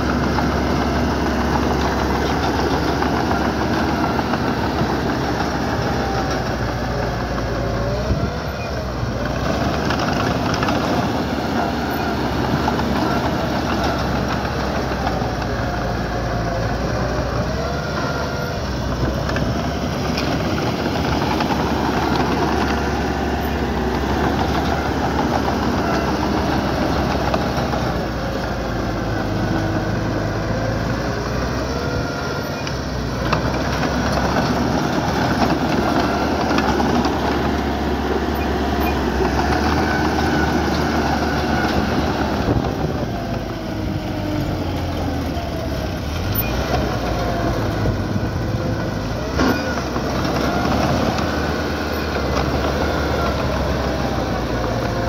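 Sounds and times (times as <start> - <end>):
diesel engine under load: 0.0 - 55.0.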